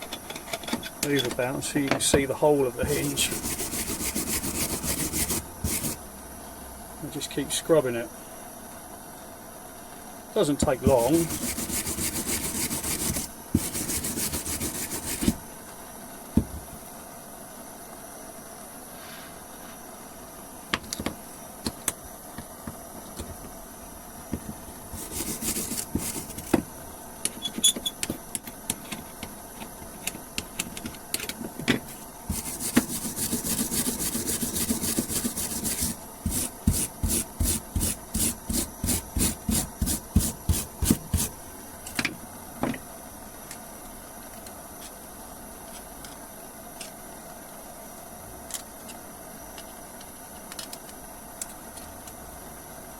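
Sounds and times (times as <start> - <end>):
wire brush scrubbing metal: 2.8 - 6.0, 10.8 - 15.4, 24.9 - 26.5, 32.3 - 41.3.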